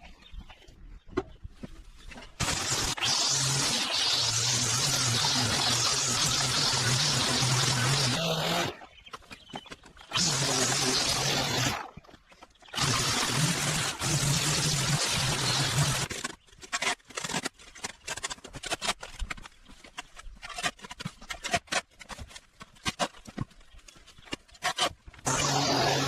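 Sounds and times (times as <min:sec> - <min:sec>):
crackles and clicks: 0:14.7 - 0:25.4.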